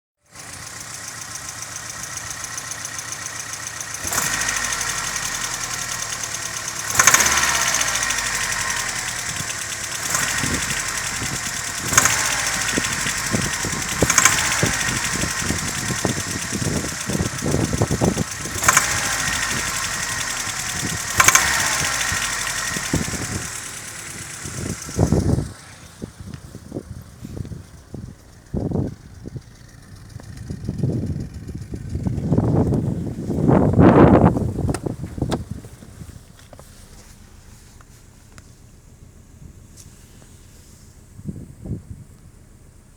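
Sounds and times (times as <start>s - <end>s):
knocking car engine revving: 0.3s - 42.9s.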